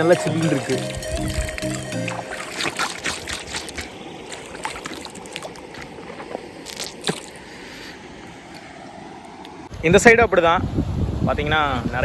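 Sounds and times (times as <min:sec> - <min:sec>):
small splashes and trickles: 0:00.0 - 0:07.6
stream running water: 0:00.0 - 0:09.8.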